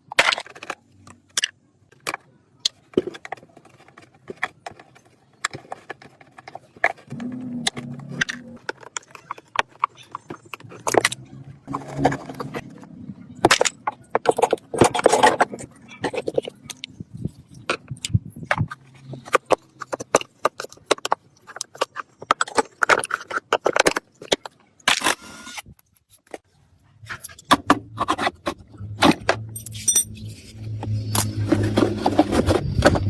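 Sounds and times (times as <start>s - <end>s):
metal tools clinking and scraping: 27.0s - 33.0s.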